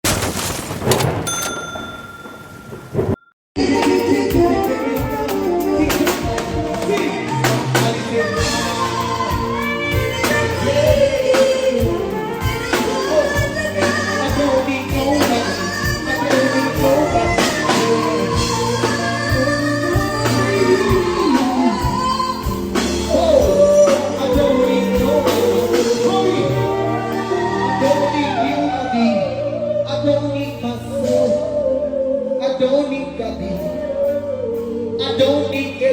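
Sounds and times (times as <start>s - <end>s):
band playing live music: 3.6s - 31.6s
person singing: 3.6s - 35.9s.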